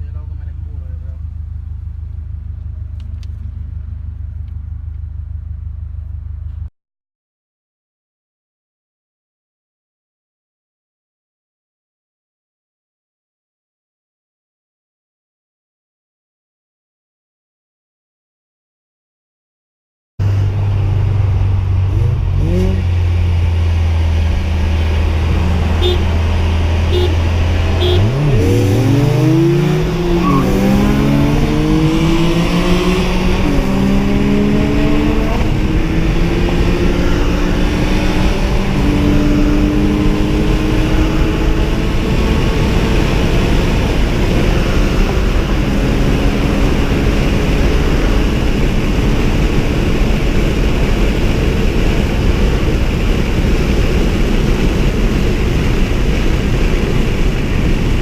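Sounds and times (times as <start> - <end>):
wind and road noise: 0.0 - 6.7, 20.2 - 58.0
car engine accelerating: 20.2 - 58.0.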